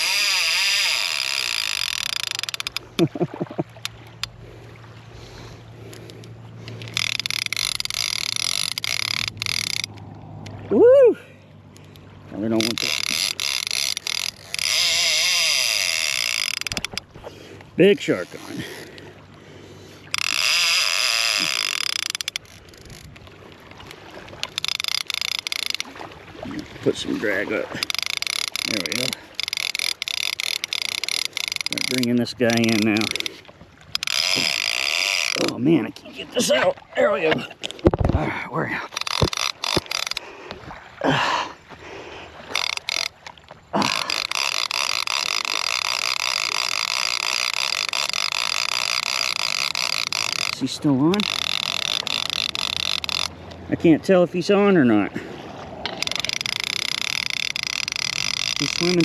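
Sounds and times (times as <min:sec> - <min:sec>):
fishing reel drag screaming: 0:00.0 - 0:03.0, 0:05.2 - 0:17.1, 0:17.8 - 0:23.1, 0:24.4 - 0:26.0, 0:27.2 - 0:35.8, 0:38.9 - 0:40.2, 0:42.4 - 0:53.6, 0:55.8 - 0:59.0.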